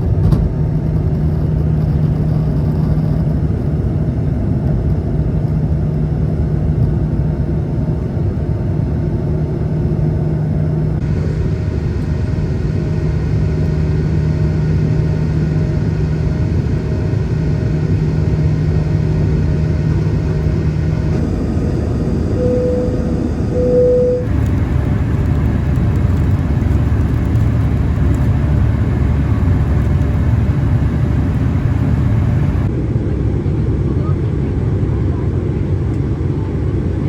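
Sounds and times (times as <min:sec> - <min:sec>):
aircraft engines rumbling: 0:00.0 - 0:37.0
constant cabin hum: 0:00.0 - 0:37.0
short steady tone: 0:21.1 - 0:24.9.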